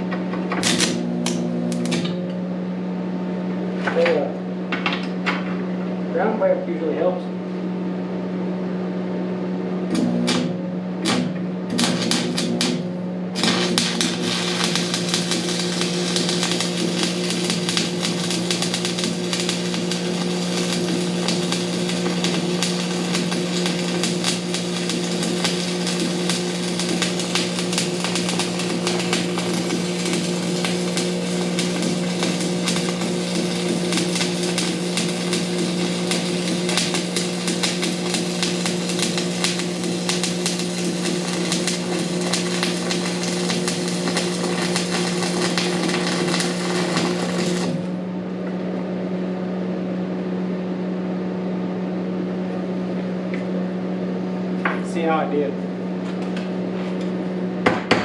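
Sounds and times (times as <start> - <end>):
welding arc sizzling crackle: 0.0 - 2.5, 9.8 - 48.1
electrical hum: 0.0 - 58.0.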